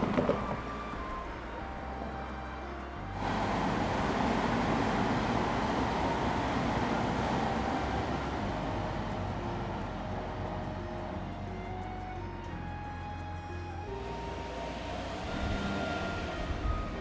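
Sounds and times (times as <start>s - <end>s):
vehicle passing by: 3.1s - 11.5s, 13.9s - 17.0s.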